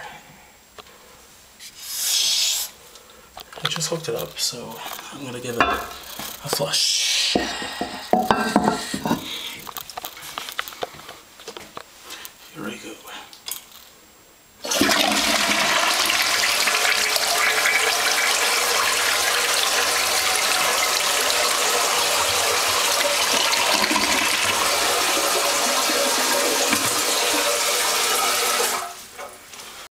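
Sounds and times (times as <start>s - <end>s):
toilet flushing: 14.6s - 29.0s.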